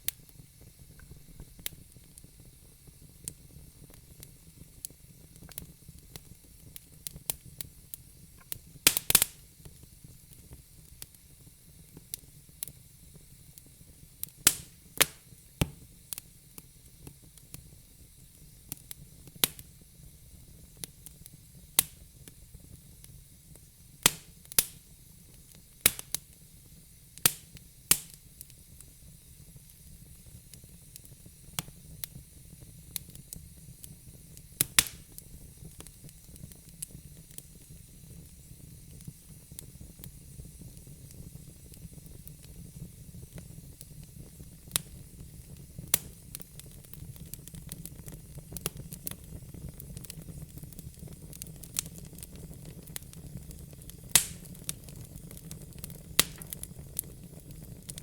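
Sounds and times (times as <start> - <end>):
fire crackling: 0.0 - 58.0.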